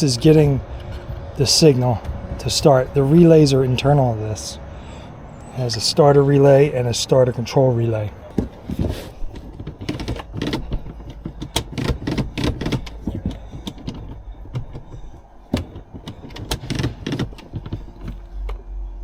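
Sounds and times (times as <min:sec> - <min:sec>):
low steady hum: 0:00.0 - 0:19.0
hands clicking on wiring connectors: 0:08.3 - 0:18.7.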